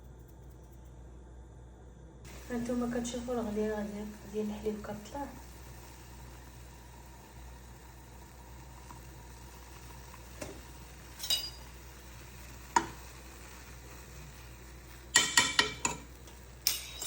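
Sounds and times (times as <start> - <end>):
gas burner hiss: 2.2 - 17.0
spoon clinking against pot: 11.2 - 11.7, 15.1 - 17.0.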